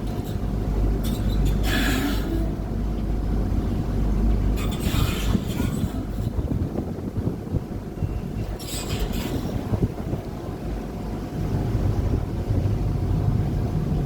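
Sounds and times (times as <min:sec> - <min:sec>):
boat engine rumble: 0:00.0 - 0:14.0.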